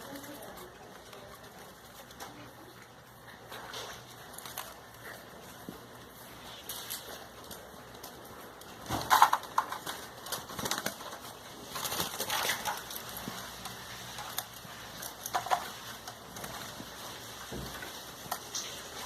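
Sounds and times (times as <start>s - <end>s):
rustling and knocking: 3.4s - 19.0s.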